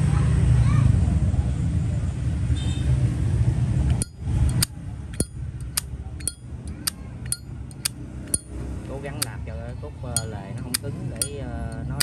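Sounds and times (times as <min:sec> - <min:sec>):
lighter lid clinking: 0:03.9 - 0:08.5, 0:10.2 - 0:12.0.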